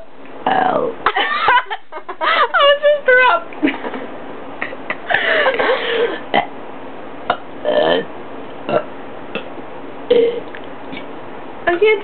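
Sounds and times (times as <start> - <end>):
person burping: 7.3 - 8.1, 8.7 - 9.5, 10.1 - 10.5.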